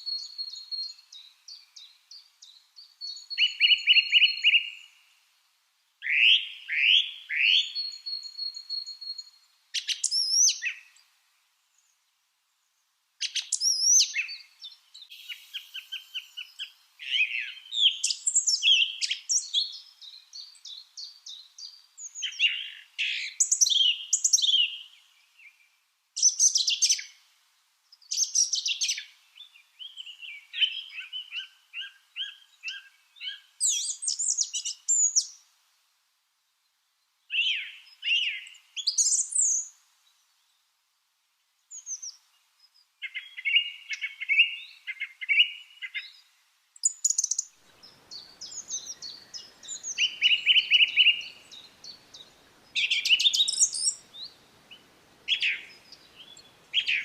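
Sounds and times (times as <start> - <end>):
faint background hiss: 0.0 - 57.0
birds chirping: 43.0 - 57.0.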